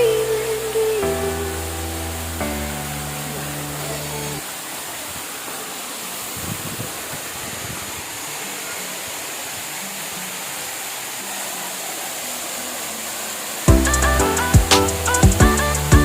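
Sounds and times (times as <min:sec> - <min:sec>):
waterfall rushing: 0:00.0 - 0:16.0
loud music with drums: 0:13.7 - 0:16.0.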